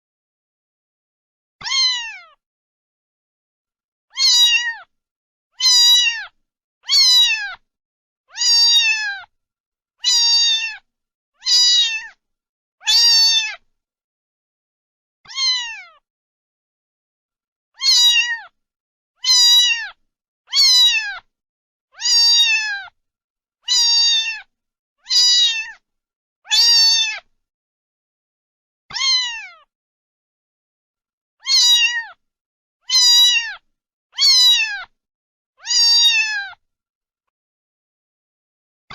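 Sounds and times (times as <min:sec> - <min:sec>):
cat meowing: 0:01.6 - 0:02.4, 0:04.1 - 0:04.9, 0:05.6 - 0:07.6, 0:08.3 - 0:09.3, 0:10.0 - 0:12.2, 0:12.8 - 0:13.6, 0:15.3 - 0:16.0, 0:17.8 - 0:18.6, 0:19.2 - 0:21.3, 0:22.0 - 0:23.0, 0:23.6 - 0:25.8, 0:26.5 - 0:27.3, 0:28.9 - 0:29.7, 0:31.4 - 0:32.2, 0:32.8 - 0:35.0, 0:35.6 - 0:36.6.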